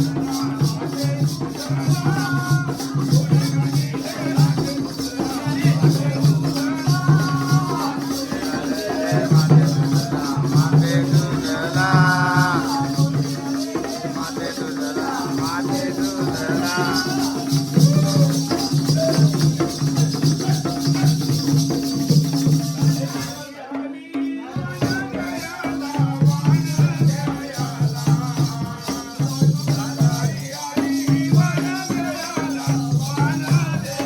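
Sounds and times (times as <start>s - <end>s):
person singing: 0.0s - 21.3s
pulsing drum beat: 0.0s - 34.0s.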